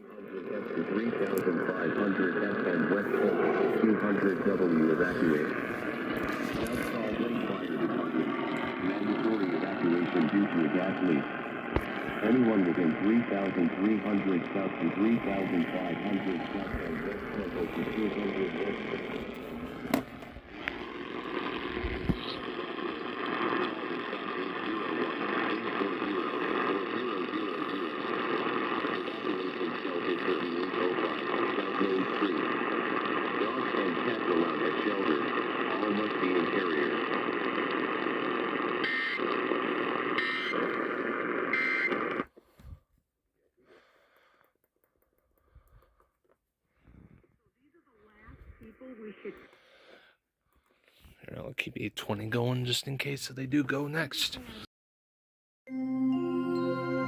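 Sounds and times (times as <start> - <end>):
radio static hiss: 0.0 - 42.3, 47.6 - 50.0.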